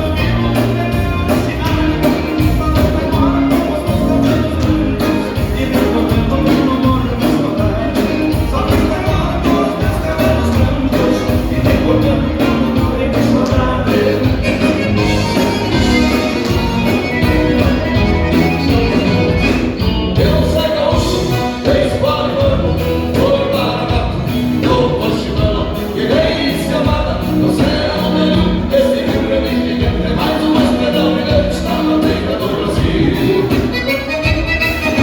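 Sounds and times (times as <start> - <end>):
band playing a song: 0.0 - 35.0
lead vocal singing: 0.0 - 35.0.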